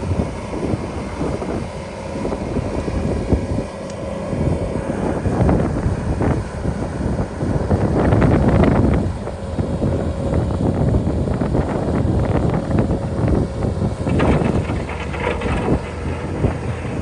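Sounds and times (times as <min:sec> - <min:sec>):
wind buffeting microphone: 0:00.0 - 0:17.0
vehicle engine running: 0:12.8 - 0:17.0.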